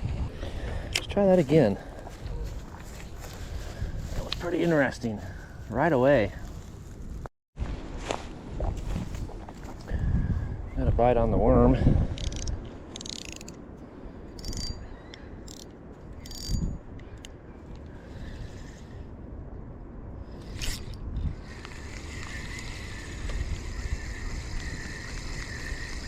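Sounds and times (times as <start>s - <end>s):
wind rumbling on microphone: 0.0s - 26.0s
fishing reel whirring: 12.2s - 13.6s, 14.4s - 14.8s, 15.5s - 16.6s, 20.4s - 26.0s.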